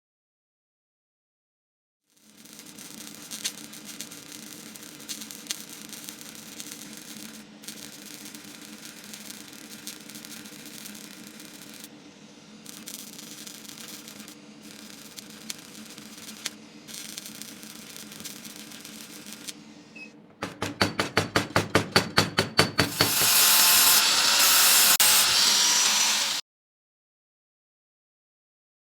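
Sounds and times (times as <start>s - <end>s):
loud steady hiss: 2.7s - 19.9s, 22.9s - 26.4s.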